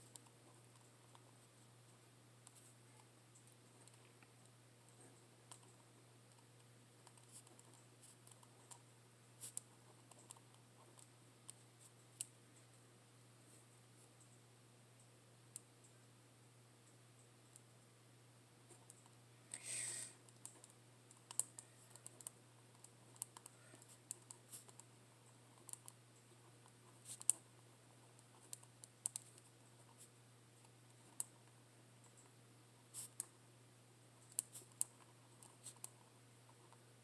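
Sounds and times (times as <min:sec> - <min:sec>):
writing clicks and taps: 0:09.4 - 0:12.4, 0:20.3 - 0:24.9, 0:25.6 - 0:27.5, 0:34.2 - 0:36.8.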